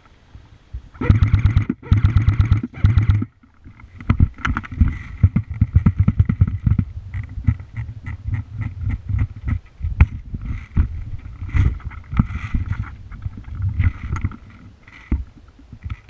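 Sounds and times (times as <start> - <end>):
airsoft gun full-auto fire: 1.0 - 3.3
knocks and clatter: 1.1 - 16.0.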